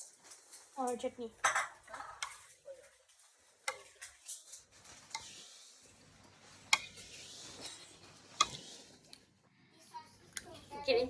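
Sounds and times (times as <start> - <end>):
spoon scraping and tapping dishes: 1.4 - 9.3.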